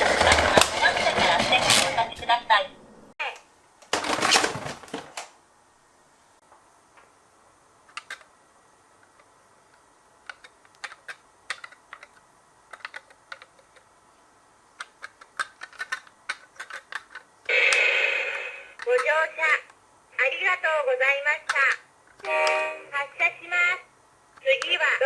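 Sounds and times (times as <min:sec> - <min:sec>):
toy cars clicking and tapping: 0:10.3 - 0:13.8, 0:14.8 - 0:17.3.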